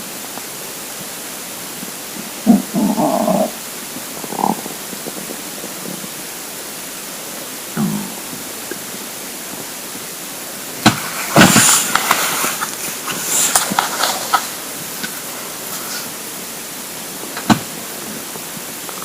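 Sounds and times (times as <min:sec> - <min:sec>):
steady hiss: 0:00.0 - 0:19.0
stomach gurgle: 0:01.8 - 0:09.8
scraping and crackling noises: 0:10.7 - 0:16.6.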